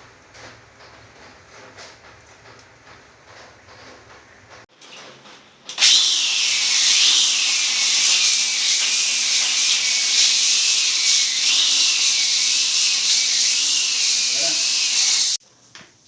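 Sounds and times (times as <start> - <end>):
electric polisher grinding marble: 5.8 - 15.4.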